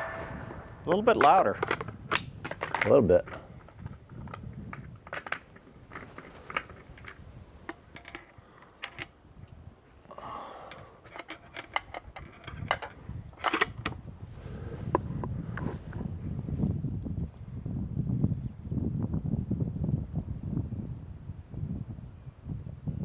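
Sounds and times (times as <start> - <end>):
gear clicking and clinking: 1.2 - 9.6, 10.6 - 14.0.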